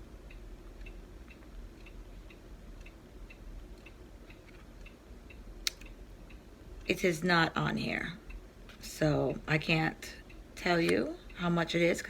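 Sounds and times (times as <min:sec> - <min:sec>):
clock ticking: 0:00.0 - 0:08.5
low room hum: 0:00.0 - 0:12.0.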